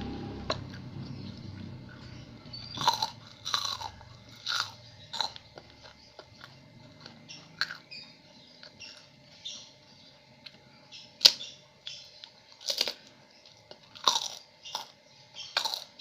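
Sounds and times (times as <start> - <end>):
chewing crisp fried food: 2.5 - 9.2, 11.2 - 16.0.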